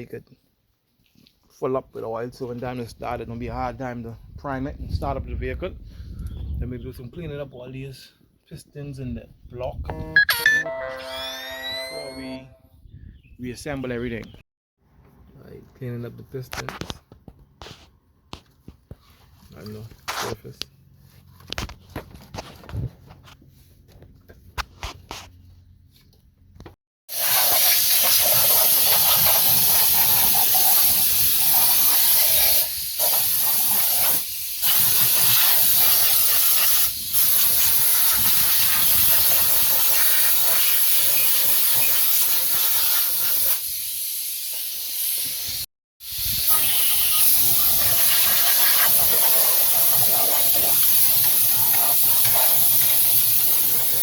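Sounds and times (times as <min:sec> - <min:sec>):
pressurised spray hissing: 0:27.1 - 0:54.0.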